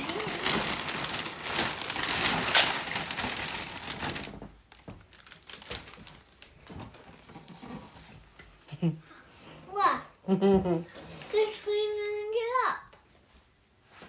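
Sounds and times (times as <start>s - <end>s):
dry cereal crunching: 0.0s - 4.3s.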